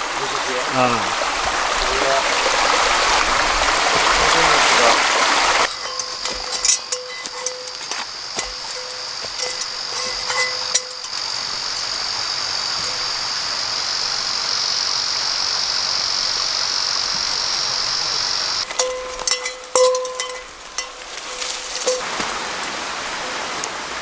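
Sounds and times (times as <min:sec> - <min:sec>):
insect buzzing: 0:00.3 - 0:18.8
light clicks and clinks: 0:05.6 - 0:13.2, 0:18.6 - 0:22.1.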